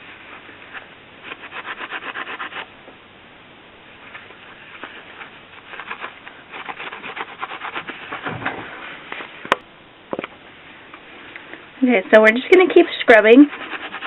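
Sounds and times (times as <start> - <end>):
sponge scrubbing metal: 0.8 - 2.7, 4.5 - 9.1, 12.4 - 14.0.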